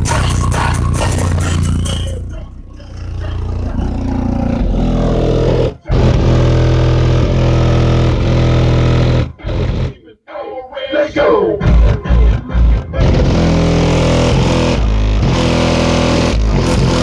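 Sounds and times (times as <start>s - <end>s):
bass-heavy music through subwoofers: 0.0s - 10.0s, 11.6s - 17.0s.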